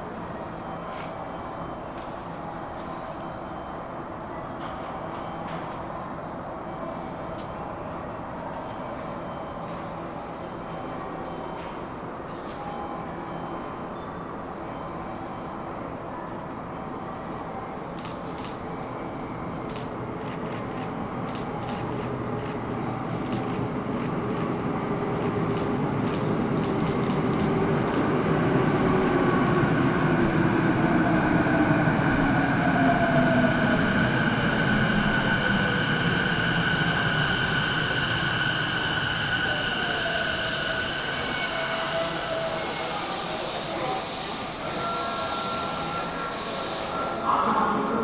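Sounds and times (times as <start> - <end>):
high hiss: 40.4 - 47.3.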